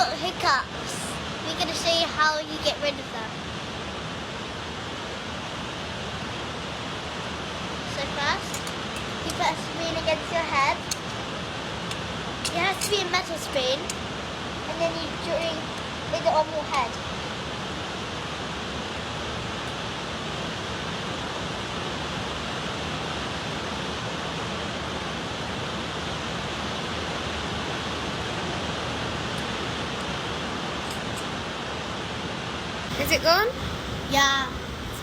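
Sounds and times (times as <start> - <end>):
steady rushing noise: 32.9 - 35.0.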